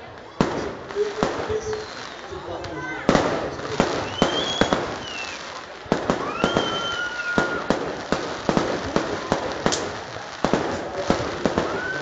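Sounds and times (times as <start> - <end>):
fireworks banging: 0.0 - 12.0
rising firework whistle: 1.0 - 2.4, 3.9 - 5.5, 6.1 - 8.0, 11.4 - 12.0.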